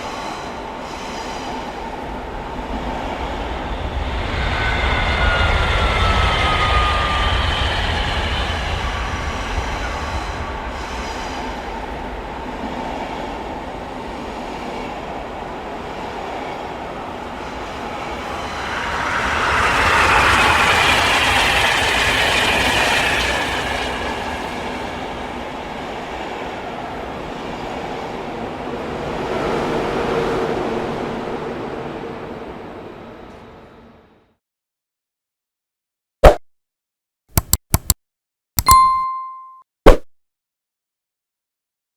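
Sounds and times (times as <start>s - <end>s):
high-speed train on rails: 0.0s - 34.4s.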